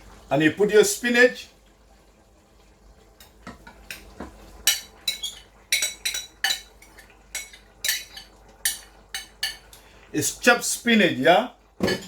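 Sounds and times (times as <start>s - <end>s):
metal spoon clinking on cookware: 4.6s - 9.8s.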